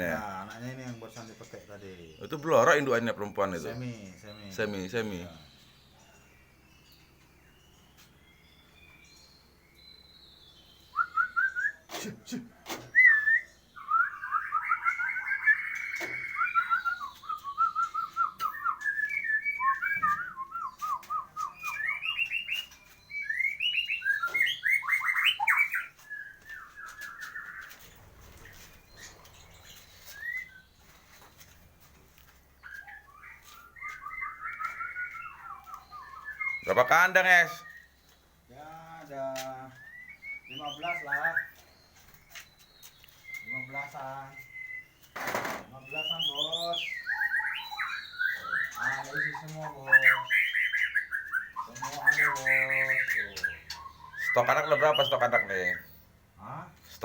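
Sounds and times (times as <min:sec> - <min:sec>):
birds singing trilled whistles: 0:00.0 - 0:12.0, 0:12.8 - 0:56.2
sharp knocks: 0:45.2 - 0:45.7.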